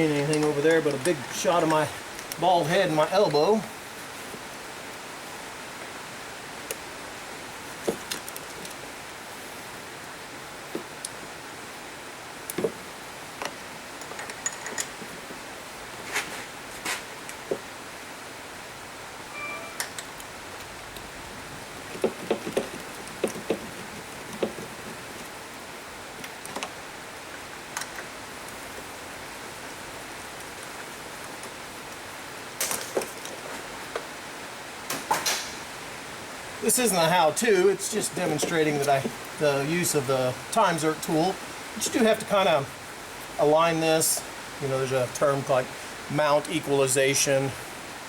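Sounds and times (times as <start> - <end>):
steady background hiss: 0.0 - 48.0
tools and metal parts clicking: 14.0 - 15.0.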